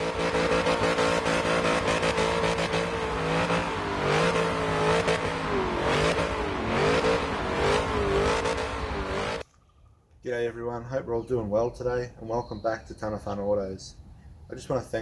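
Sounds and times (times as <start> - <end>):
car engine revving: 0.0 - 9.4.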